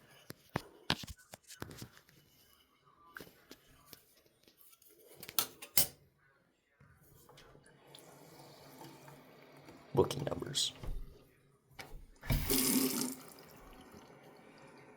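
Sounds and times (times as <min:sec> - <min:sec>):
tap water rushing: 0:07.9 - 0:11.2, 0:11.8 - 0:14.9.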